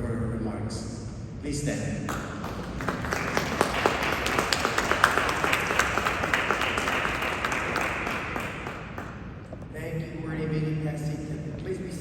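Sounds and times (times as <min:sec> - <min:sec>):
audience applauding: 0:02.1 - 0:09.5.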